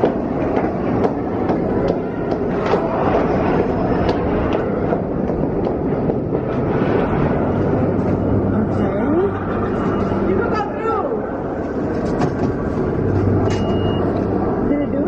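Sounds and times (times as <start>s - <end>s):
subway train rumbling: 0.0s - 15.0s.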